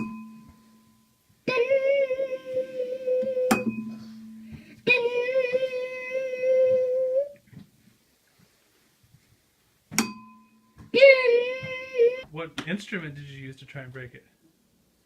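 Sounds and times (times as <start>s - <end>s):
girl singing a long high note: 1.4s - 4.2s, 4.8s - 7.4s, 10.9s - 12.2s.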